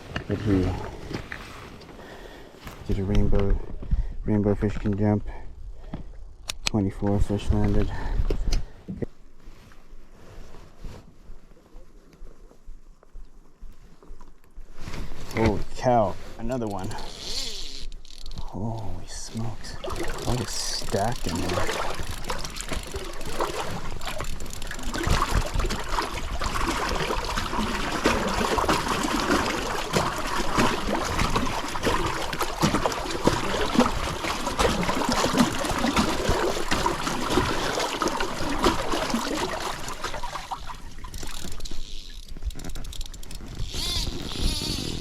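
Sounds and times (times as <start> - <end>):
river water rushing around raft: 19.7 - 40.6.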